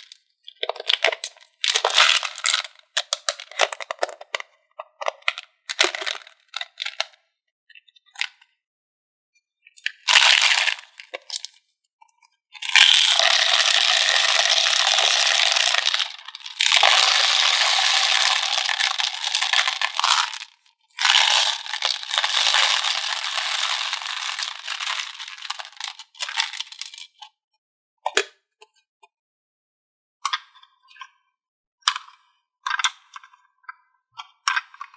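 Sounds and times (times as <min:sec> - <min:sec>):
candies rattling into plastic tub: 0:00.0 - 0:04.4, 0:05.0 - 0:07.1, 0:10.1 - 0:11.5, 0:12.6 - 0:27.1.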